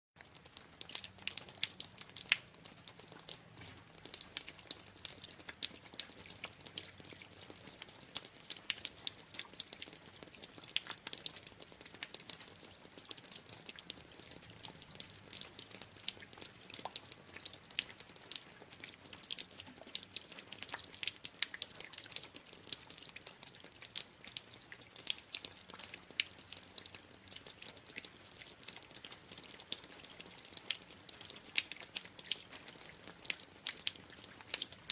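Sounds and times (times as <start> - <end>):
water dripping: 0.2 - 34.9.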